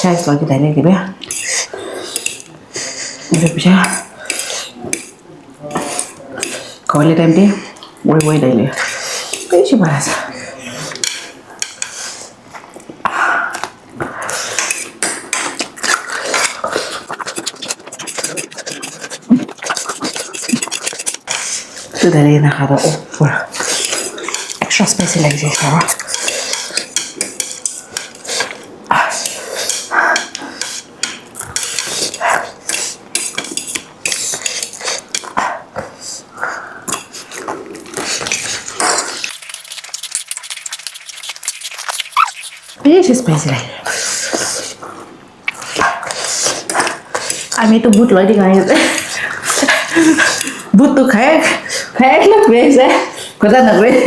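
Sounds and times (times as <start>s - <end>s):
utensils clinking against dishes: 1.2s - 6.7s, 23.6s - 35.3s.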